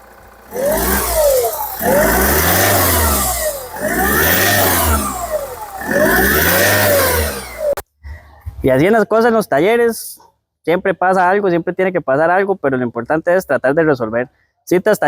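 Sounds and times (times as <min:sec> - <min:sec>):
turbocharged engine revving: 0:00.0 - 0:07.8.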